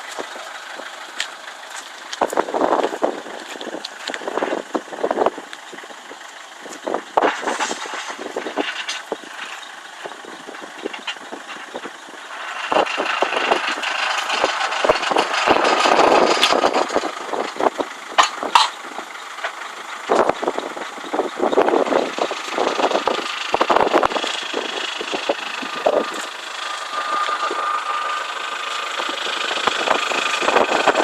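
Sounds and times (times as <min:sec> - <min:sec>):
forklift engine running: 0:00.0 - 0:31.0
short metallic knocks and clanks: 0:18.2 - 0:18.8.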